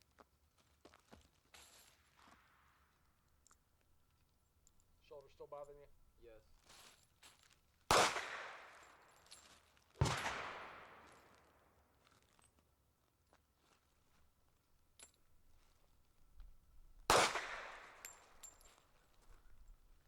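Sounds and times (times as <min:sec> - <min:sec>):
gunshots with echo: 0:07.9 - 0:08.8, 0:10.0 - 0:11.2, 0:17.1 - 0:18.3.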